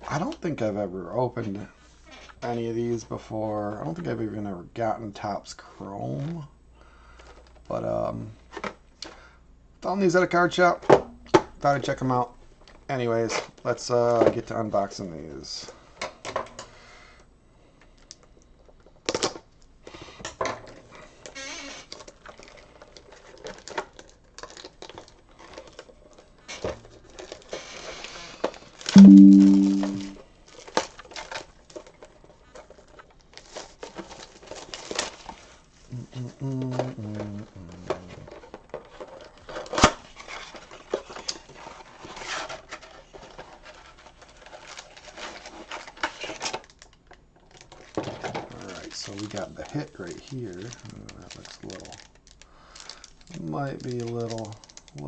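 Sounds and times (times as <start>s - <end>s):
packaging crinkling and rustling: 21.9s - 27.7s, 30.6s - 35.6s, 37.7s - 55.0s.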